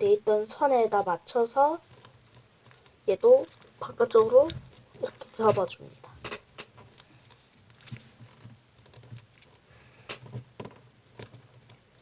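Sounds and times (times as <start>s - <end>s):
paper being folded and creased: 1.8s - 5.8s, 6.6s - 9.7s.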